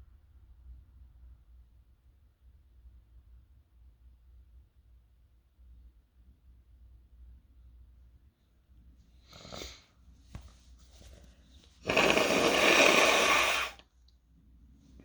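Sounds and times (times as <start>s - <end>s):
forceful blast of air through nose: 11.8s - 13.8s.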